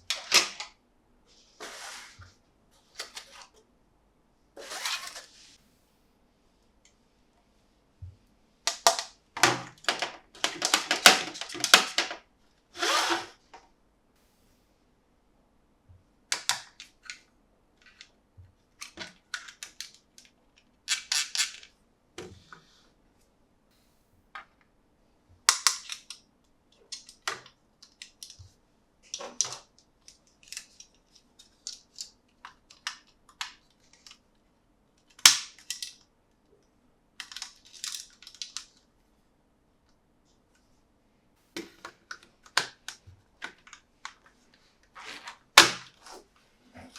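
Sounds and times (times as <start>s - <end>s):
plastic toy parts clicking: 18.8s - 21.7s, 25.5s - 26.2s, 35.0s - 36.0s, 37.2s - 38.8s.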